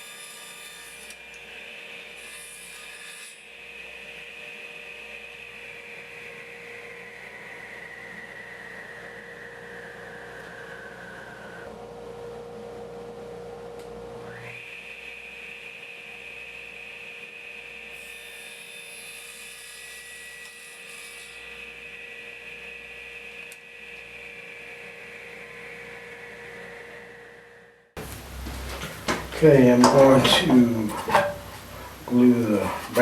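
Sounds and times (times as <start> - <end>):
machine whine: 3.6 - 11.8, 21.6 - 33.0.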